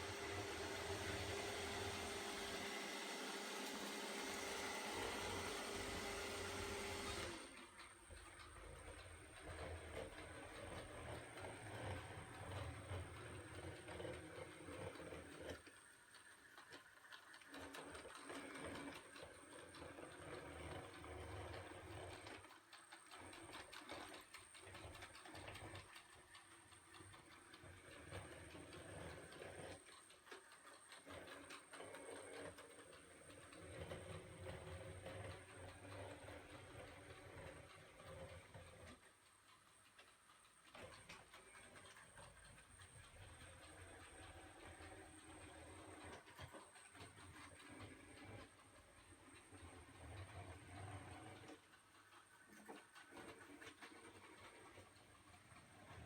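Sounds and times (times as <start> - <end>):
low motor hum: 0.0 - 15.6
soft clicks and ticks: 7.1 - 56.0.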